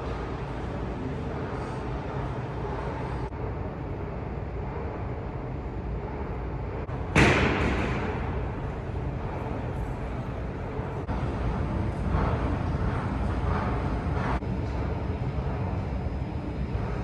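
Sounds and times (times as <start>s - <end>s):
street background noise: 0.0s - 17.0s
loud echoing bang: 7.0s - 8.7s.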